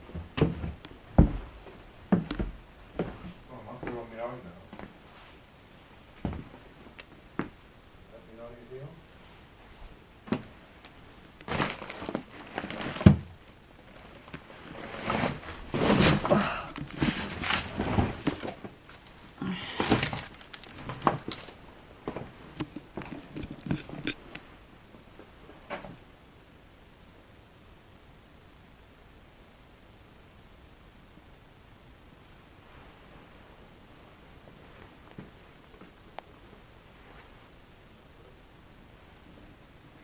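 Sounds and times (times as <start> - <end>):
rustling and crinkling: 0.0 - 7.6, 9.2 - 26.0, 32.6 - 37.6.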